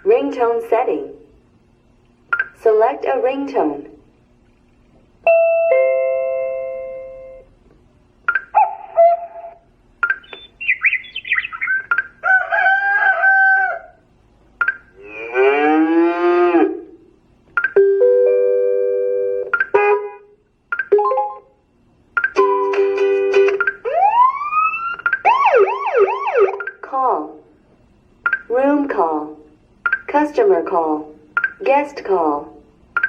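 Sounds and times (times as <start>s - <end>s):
short chirping tones: 10.0s - 12.1s.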